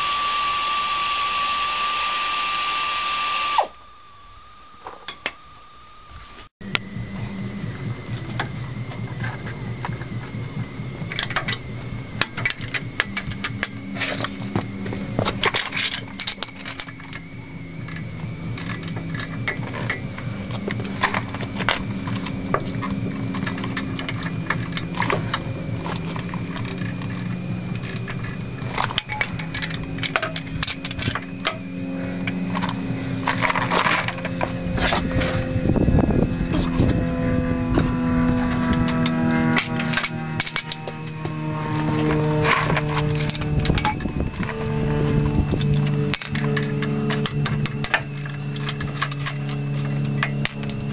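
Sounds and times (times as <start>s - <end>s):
steady hum: 0.0s - 50.9s
metal tools clinking: 11.0s - 35.4s, 37.8s - 50.9s.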